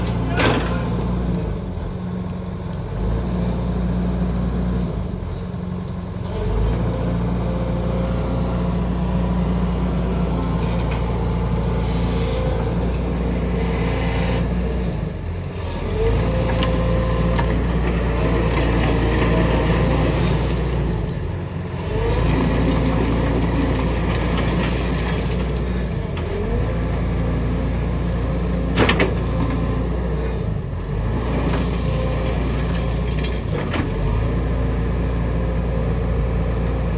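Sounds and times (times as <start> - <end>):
excavator diesel engine running: 0.0 - 36.9
hydraulic whines: 10.4 - 14.6
hiss: 11.7 - 12.5.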